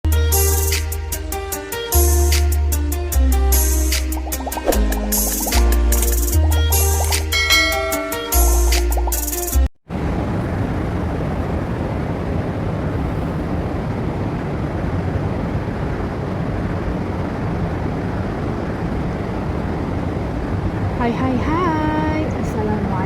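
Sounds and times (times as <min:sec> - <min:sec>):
intro music: 0:00.2 - 0:09.7
low rumbling noise: 0:09.9 - 0:23.0.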